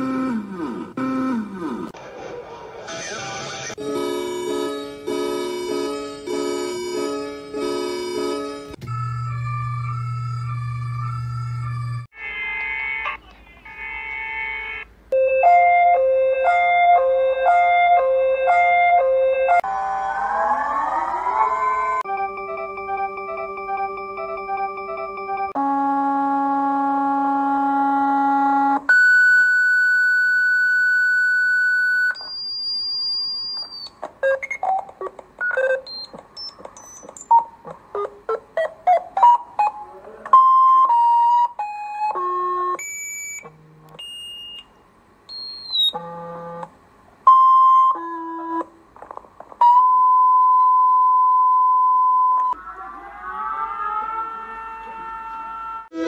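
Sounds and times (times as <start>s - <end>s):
harsh electronic buzz: 0.0s - 1.9s
short bleeps and chirps: 42.8s - 46.0s.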